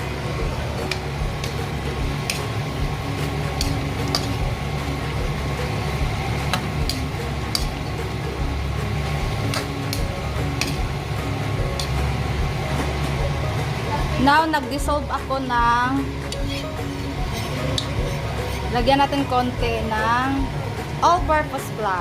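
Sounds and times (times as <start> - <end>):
steady low hum: 0.0 - 22.0
utensil scraping a pan: 16.2 - 18.9.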